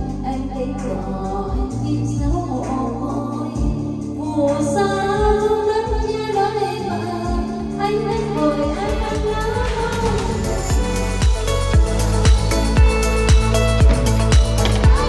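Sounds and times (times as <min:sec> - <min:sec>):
woman singing: 0:00.0 - 0:11.2, 0:14.7 - 0:15.0
sustained backing music: 0:00.0 - 0:15.0
low drum beats: 0:08.2 - 0:15.0.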